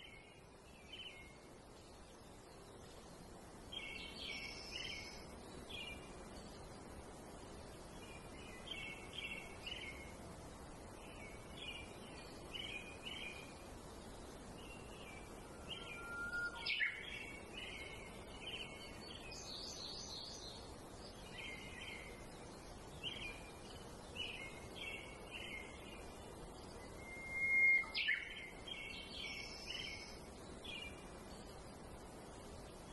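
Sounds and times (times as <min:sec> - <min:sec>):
songbirds chirping: 0:00.0 - 0:32.9
steady outdoor hiss: 0:00.0 - 0:32.9
loud whistled bird note: 0:15.5 - 0:17.1, 0:27.0 - 0:28.3.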